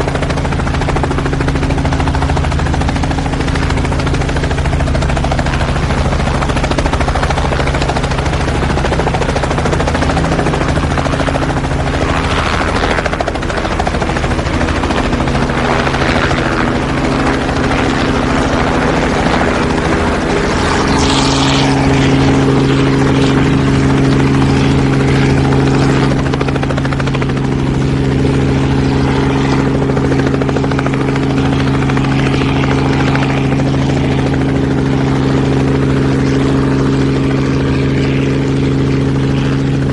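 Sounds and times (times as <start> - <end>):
helicopter engine and turbine hum: 0.0 - 39.9
helicopter rotor chop: 0.0 - 39.9.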